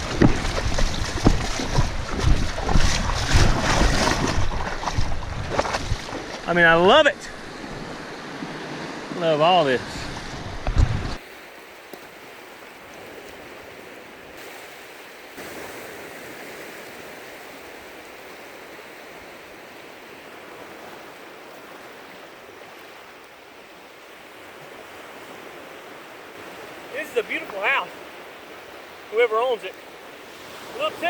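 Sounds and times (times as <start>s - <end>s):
wind buffeting microphone: 0.0s - 9.2s, 9.8s - 11.2s
surf washing on beach: 0.0s - 31.0s.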